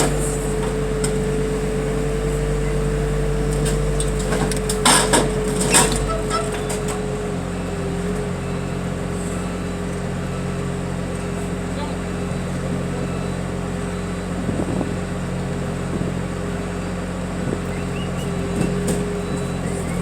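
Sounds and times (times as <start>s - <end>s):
steady whine: 0.0s - 4.9s
heavy machinery engine drone: 0.0s - 20.0s.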